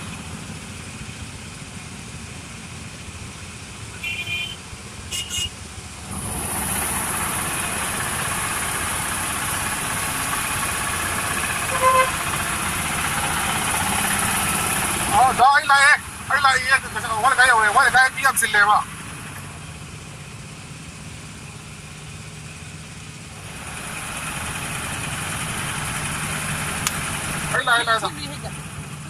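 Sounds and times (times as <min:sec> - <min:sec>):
road traffic noise: 0:00.0 - 0:29.0
short horn toots: 0:04.0 - 0:05.6, 0:11.6 - 0:12.2.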